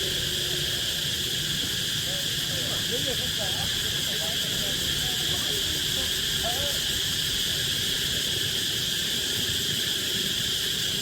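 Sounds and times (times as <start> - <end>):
high-pitched insect chorus: 0.0 - 11.0.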